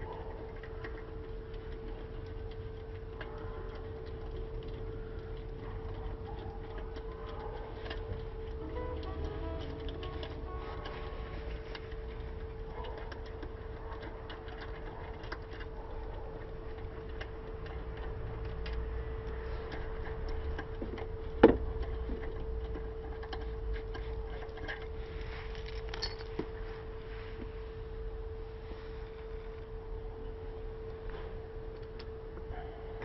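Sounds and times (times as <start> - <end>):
steady hum: 0.0 - 33.0
metal tools clinking: 25.6 - 26.4.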